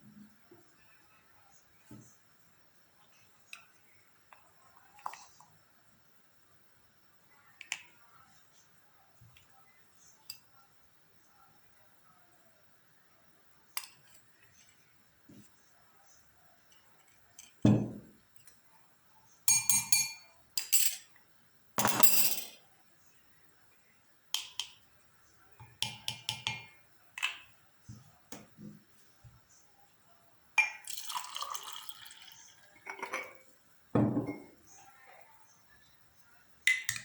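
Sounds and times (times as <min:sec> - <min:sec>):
utensils and glassware clinking: 0:19.5 - 0:21.1, 0:21.8 - 0:22.6, 0:32.8 - 0:33.4.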